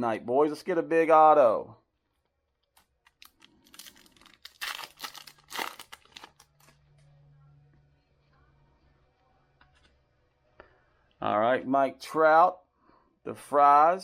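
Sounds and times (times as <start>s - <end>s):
wrapper tearing and crinkling: 3.1s - 6.8s.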